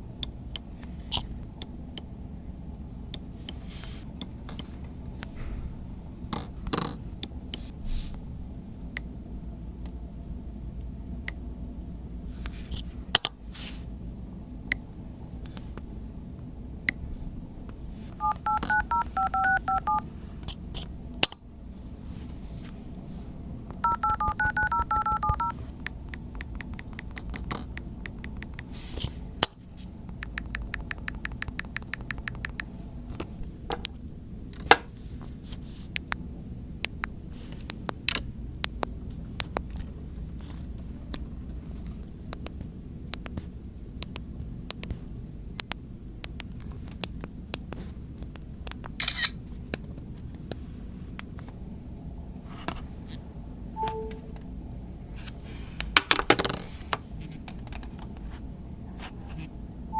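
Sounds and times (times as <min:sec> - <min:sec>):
steady low hum: 0:00.0 - 0:59.9
phone keypad dialing tones: 0:18.2 - 0:20.0, 0:23.8 - 0:25.6, 0:53.8 - 0:54.4
sharp clicks: 0:29.4 - 0:32.7.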